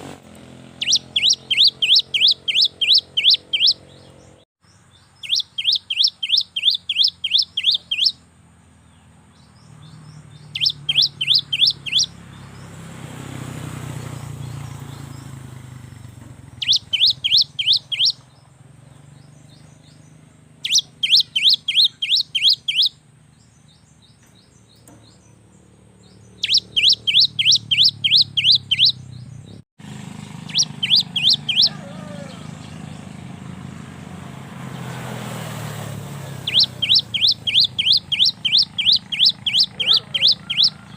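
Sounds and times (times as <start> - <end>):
bird singing quick high notes: 0.8 - 4.2, 5.2 - 8.2, 10.4 - 12.2, 16.6 - 18.2, 20.6 - 22.9, 26.0 - 29.4, 30.4 - 31.8, 36.3 - 40.7.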